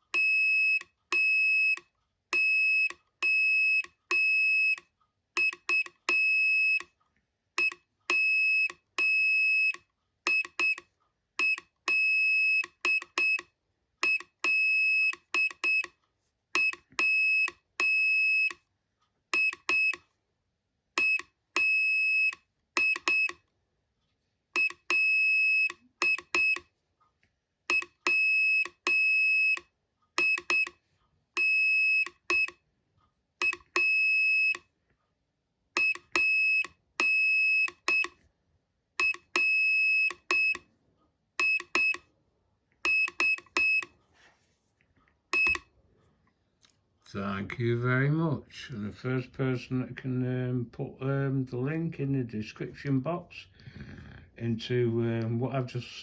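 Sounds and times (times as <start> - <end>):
morse code beeping: 24.6 - 26.7, 30.2 - 30.8, 45.4 - 45.6.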